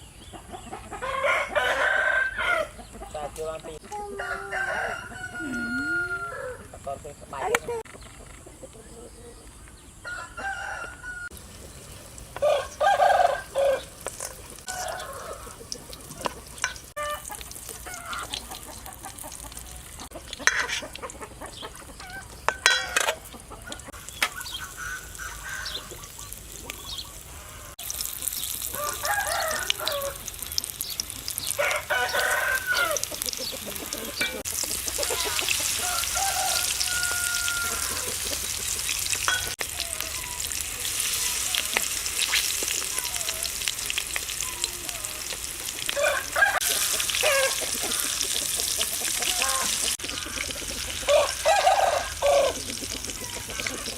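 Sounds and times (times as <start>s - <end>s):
chickens clucking: 0.0s - 53.9s
rooster crowing: 1.0s - 2.8s, 4.0s - 6.7s, 10.0s - 11.4s, 12.4s - 13.9s, 14.6s - 15.8s, 28.7s - 30.3s, 31.5s - 33.2s, 33.8s - 38.4s, 45.8s - 48.3s, 49.1s - 50.4s, 51.0s - 52.6s
food frying in a pan: 11.3s - 53.9s.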